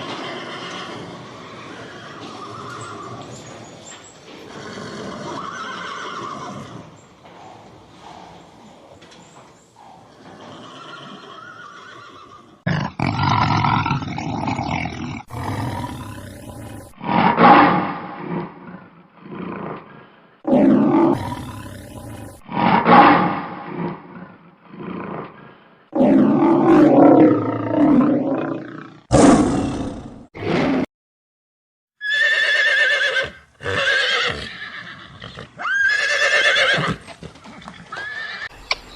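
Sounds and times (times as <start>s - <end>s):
lion roaring: 12.7s - 30.8s.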